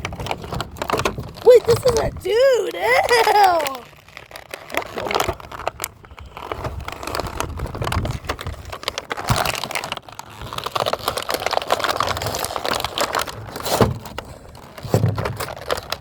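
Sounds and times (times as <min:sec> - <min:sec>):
plastic packaging crinkling: 0:00.0 - 0:16.0
wind rumbling on microphone: 0:05.4 - 0:09.5.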